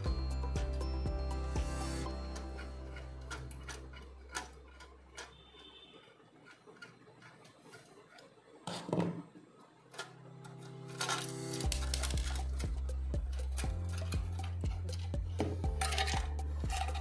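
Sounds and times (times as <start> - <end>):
faint background music: 0.0 - 7.9, 8.5 - 17.0
metal clatter: 11.0 - 17.0
small metal parts clicking: 13.3 - 17.0.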